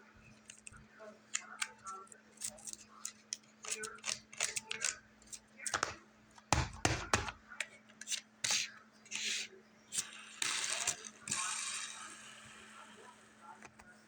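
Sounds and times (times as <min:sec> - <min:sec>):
faint steady hum: 0:00.0 - 0:14.0
scratchy rubbing: 0:08.1 - 0:10.1.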